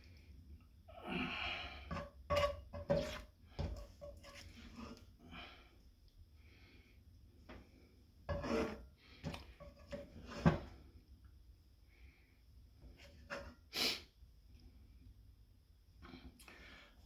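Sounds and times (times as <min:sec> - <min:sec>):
rubbing and scraping: 0:01.9 - 0:05.0, 0:08.3 - 0:10.8.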